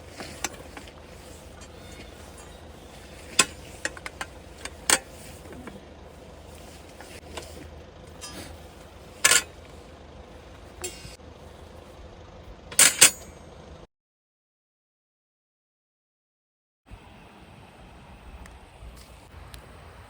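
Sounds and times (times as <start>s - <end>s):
metal pieces clanking: 0.1s - 5.8s, 6.8s - 9.6s, 12.7s - 13.4s.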